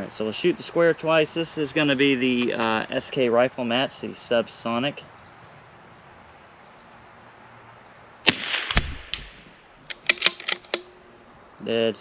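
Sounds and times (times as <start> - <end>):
high insect chorus: 0.0 - 12.0
rifle shots cracking: 8.2 - 11.0
metallic clicks of rifle bolt: 8.3 - 10.9.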